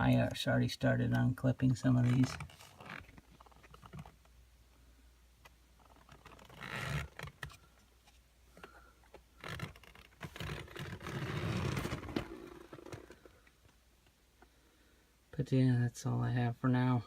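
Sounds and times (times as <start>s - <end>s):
rustling and scraping of plastic parts: 1.8s - 4.4s, 5.4s - 13.8s.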